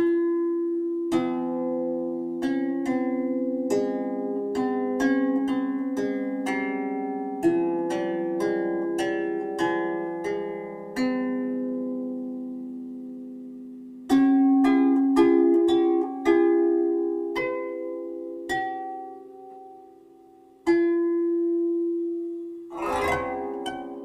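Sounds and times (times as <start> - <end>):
plucked string melody: 22.6 - 24.0.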